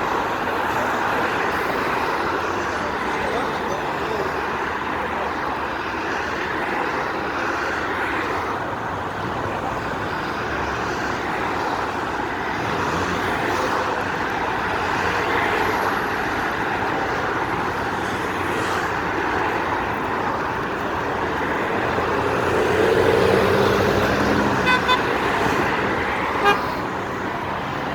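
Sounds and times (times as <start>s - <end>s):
cars passing: 0.0s - 27.9s
loud vehicle passing: 9.6s - 27.9s.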